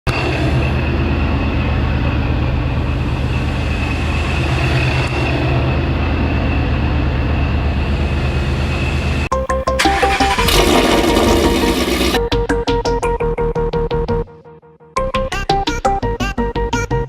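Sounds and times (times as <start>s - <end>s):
vehicle engine rumbling: 0.5s - 12.2s.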